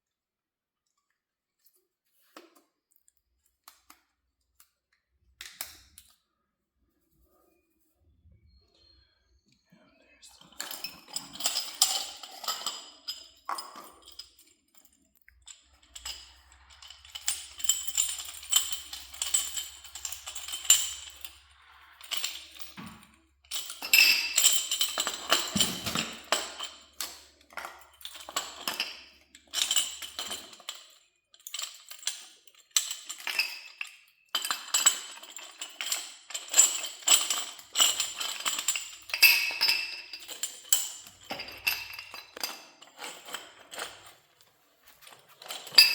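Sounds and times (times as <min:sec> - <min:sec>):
metal fittings and tools clinking: 0:10.3 - 0:45.9.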